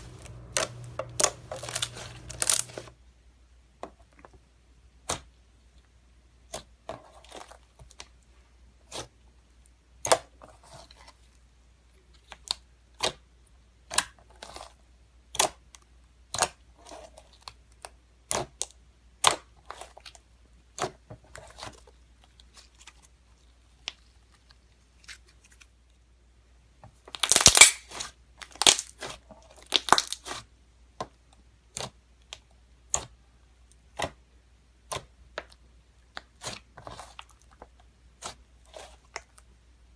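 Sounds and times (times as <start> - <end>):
slime clicking and popping: 27.1 - 30.3.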